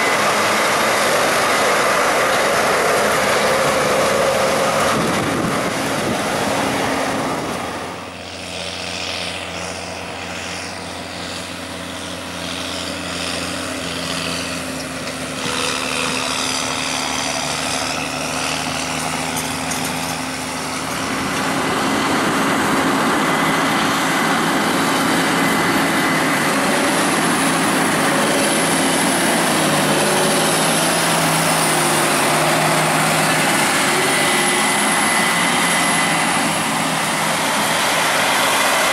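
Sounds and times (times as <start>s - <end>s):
harvest machinery engines droning: 0.0s - 38.9s.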